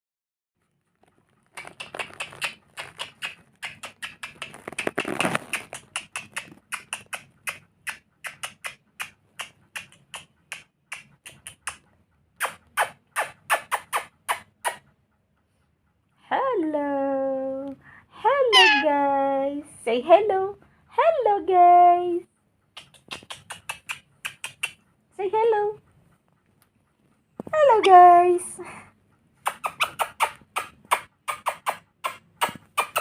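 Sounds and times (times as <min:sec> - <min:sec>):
parrot clicking chirps: 0:18.5 - 0:18.9, 0:29.4 - 0:33.0.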